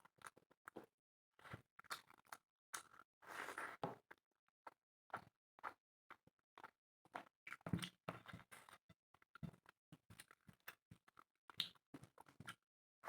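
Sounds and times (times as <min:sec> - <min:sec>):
close chewing and mouth noises: 0:01.7 - 0:03.8.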